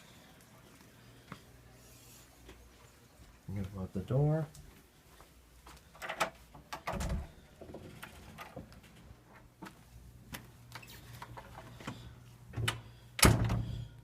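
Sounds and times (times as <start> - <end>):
footsteps: 0.0 - 6.6, 8.6 - 12.6
door thudding shut: 13.2 - 13.9.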